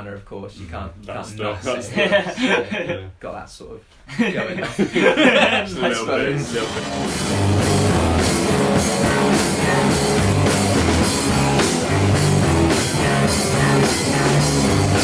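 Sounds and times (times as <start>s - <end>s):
bass guitar: 6.4s - 15.0s
distorted electric guitar: 6.4s - 15.0s
hard-hit drums: 6.4s - 15.0s.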